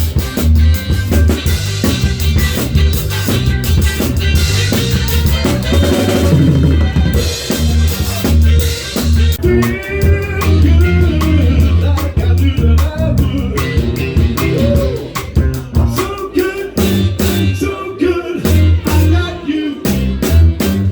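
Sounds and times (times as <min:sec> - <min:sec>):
bass line: 0:00.0 - 0:20.9
pitched melodic lines: 0:00.4 - 0:15.9.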